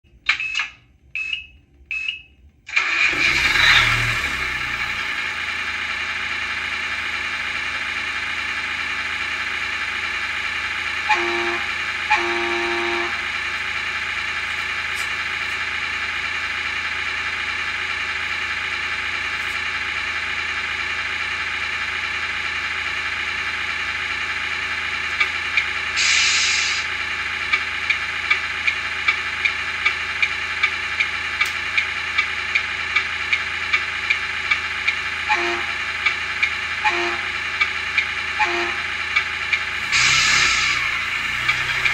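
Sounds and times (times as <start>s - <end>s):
diesel engine idling: 2.7s - 41.9s
short horn blasts: 11.0s - 13.6s, 35.2s - 35.9s, 36.8s - 37.4s, 38.3s - 39.0s, 39.8s - 41.9s
air brake hiss: 26.0s - 26.9s, 39.9s - 40.9s.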